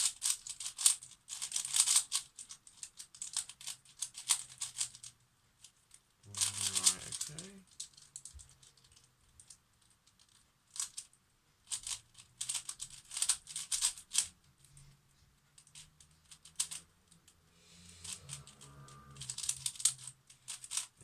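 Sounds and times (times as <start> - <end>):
puzzle cube clicking as turned: 0.0 - 5.1, 6.3 - 8.3, 11.7 - 14.3, 15.7 - 16.8, 18.0 - 21.0.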